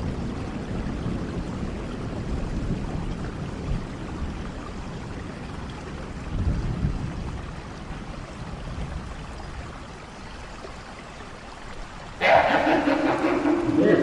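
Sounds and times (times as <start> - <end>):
low rumble of thunder: 0.0 - 9.9
rain: 0.0 - 14.0.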